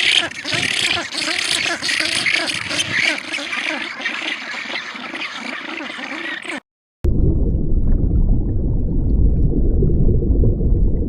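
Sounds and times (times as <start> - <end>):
small animals chirping: 0.0 - 6.6.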